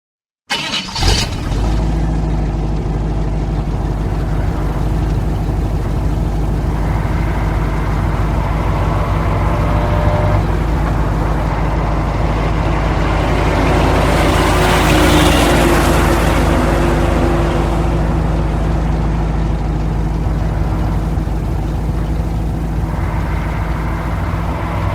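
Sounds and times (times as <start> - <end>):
heavy truck engine droning: 0.5 - 24.9
rush of high-pitched noise: 20.0 - 24.9.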